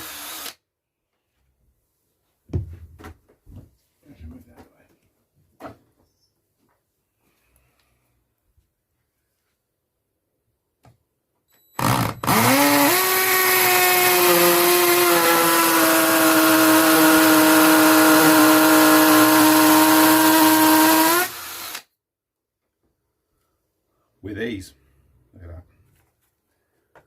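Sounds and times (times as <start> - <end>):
hammer drill boring into masonry: 0.0 - 0.6, 11.8 - 21.9.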